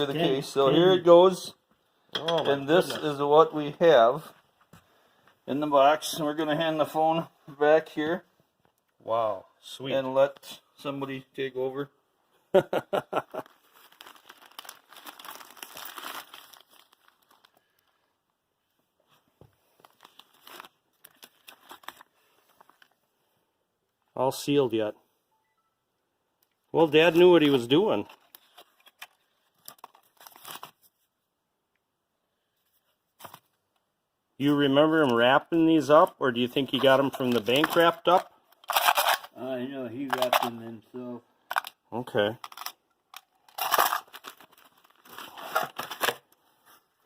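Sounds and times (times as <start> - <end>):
wrapping crinkling and rustling: 13.0 - 18.1, 19.1 - 23.1, 26.8 - 31.1, 35.9 - 39.4, 40.0 - 40.7, 41.4 - 47.0.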